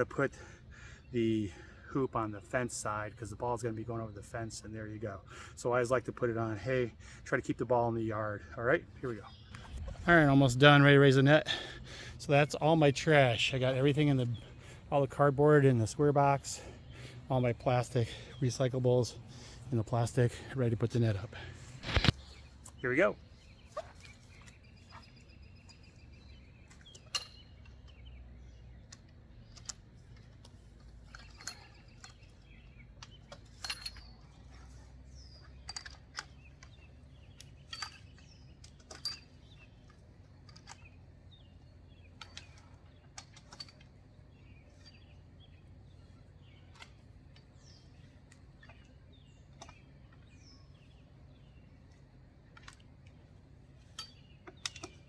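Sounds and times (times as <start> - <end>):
small birds chirping: 0.0 - 55.0
net rods clicking and knocking: 53.9 - 55.0.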